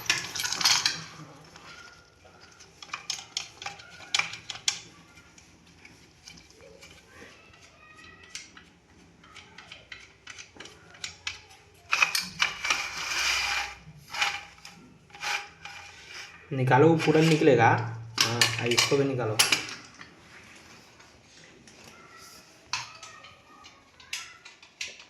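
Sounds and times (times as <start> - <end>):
metal clinking and knocking: 0.0 - 7.0, 17.0 - 20.1
scraping rub: 11.9 - 17.5.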